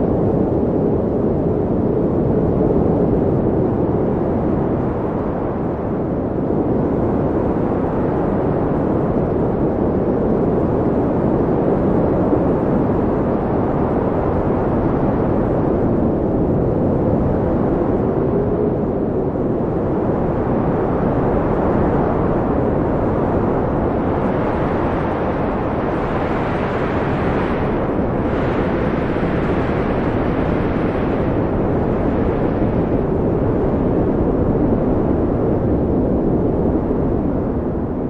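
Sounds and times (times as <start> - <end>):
wind blowing: 10.7 - 38.0.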